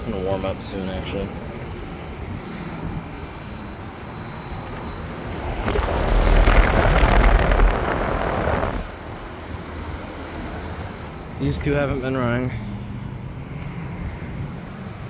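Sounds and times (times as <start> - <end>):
rushing sound with deep rumble: 4.4 - 9.8.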